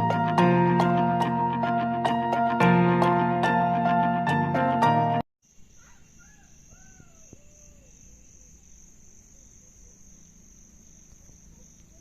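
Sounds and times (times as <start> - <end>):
background music: 0.0 - 5.2
crickets trilling: 5.4 - 12.0.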